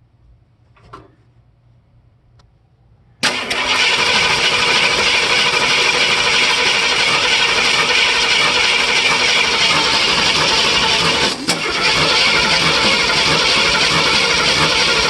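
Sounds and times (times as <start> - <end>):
rough idling engine: 3.2 - 15.0.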